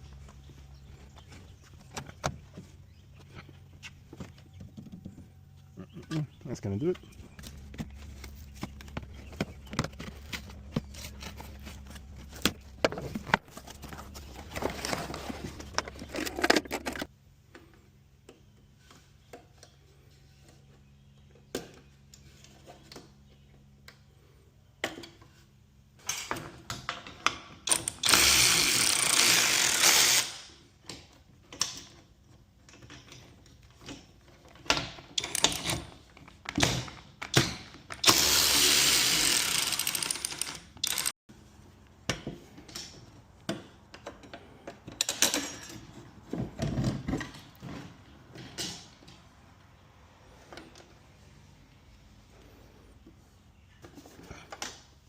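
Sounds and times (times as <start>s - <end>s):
power tool burst: 27.7s - 30.5s, 38.0s - 41.1s
tools clicking and rattling: 32.6s - 41.1s, 43.9s - 46.1s.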